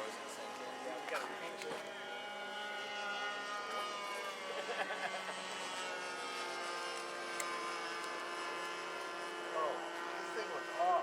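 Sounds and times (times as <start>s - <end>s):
model aircraft engine droning: 0.0s - 11.0s.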